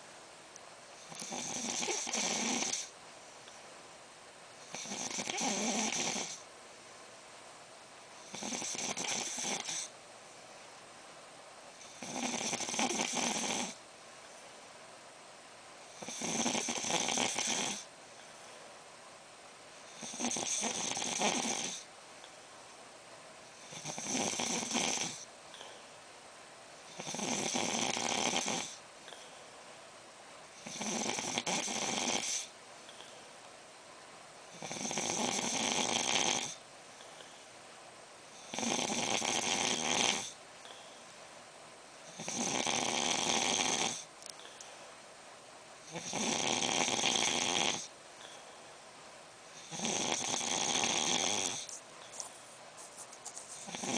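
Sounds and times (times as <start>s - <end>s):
man snoring: 1.1s - 2.9s, 4.7s - 6.4s, 8.3s - 9.9s, 11.8s - 13.8s, 16.0s - 17.9s, 20.0s - 21.9s, 23.7s - 25.3s, 26.9s - 28.8s, 30.6s - 32.5s, 34.5s - 36.6s, 38.4s - 40.4s, 42.1s - 44.1s, 45.9s - 47.9s, 49.6s - 51.7s, 53.6s - 53.9s
quiet breathing: 15.8s - 18.9s, 23.4s - 26.1s, 26.8s - 29.8s, 30.5s - 33.5s, 34.7s - 41.4s, 42.0s - 45.2s, 45.8s - 53.9s.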